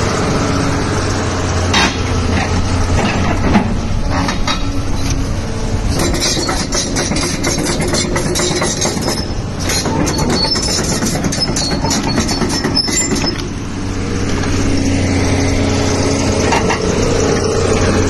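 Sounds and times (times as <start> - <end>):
excavator diesel engine running: 0.0 - 18.0
metallic clanking and scraping: 1.7 - 13.6, 15.8 - 18.0.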